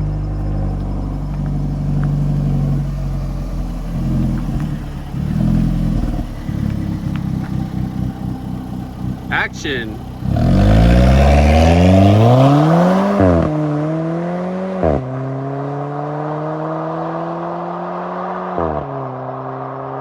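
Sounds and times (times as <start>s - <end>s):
car engine running: 0.0s - 14.8s.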